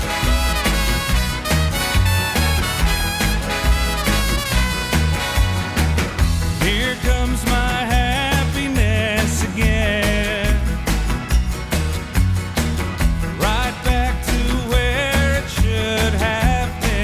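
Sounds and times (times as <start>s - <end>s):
upbeat brass dance music: 0.0s - 17.0s
person singing: 6.6s - 10.8s, 13.4s - 17.0s.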